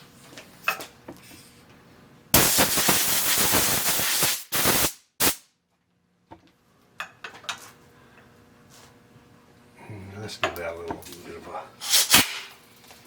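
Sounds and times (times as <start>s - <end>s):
compressed air blasts: 2.4s - 5.5s, 11.8s - 12.6s.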